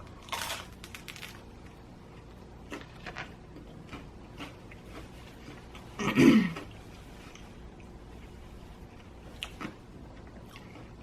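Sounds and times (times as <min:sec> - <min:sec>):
woman clearing throat: 0:06.0 - 0:06.6.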